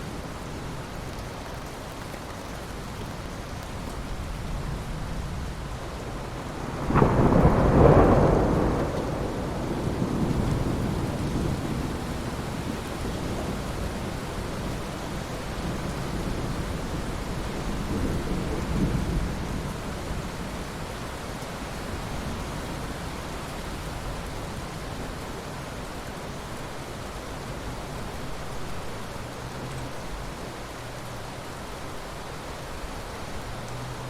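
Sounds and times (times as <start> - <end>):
steady rain: 0.0 - 34.0
rolling thunder: 6.3 - 14.2.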